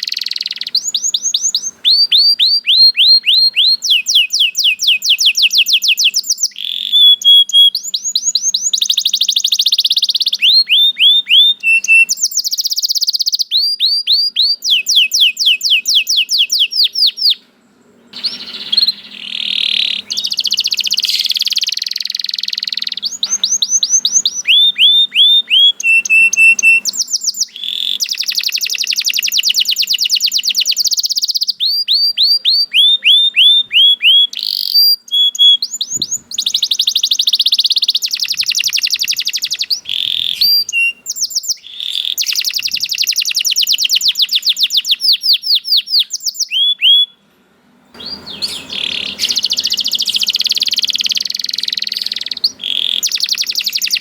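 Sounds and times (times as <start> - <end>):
canary singing: 0.0 - 47.2, 48.0 - 54.0.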